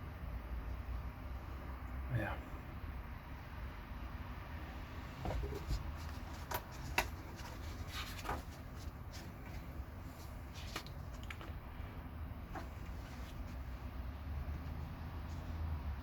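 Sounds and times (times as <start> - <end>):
book pages rustling: 5.2 - 11.6, 12.5 - 13.9.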